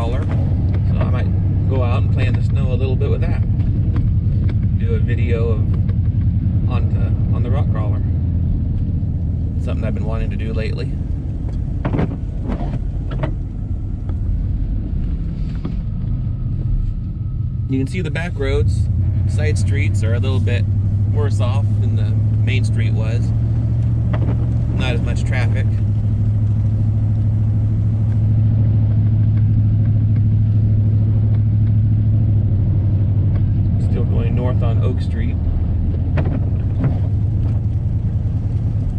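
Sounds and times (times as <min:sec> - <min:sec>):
pickup truck engine rumble: 0:00.0 - 0:38.9.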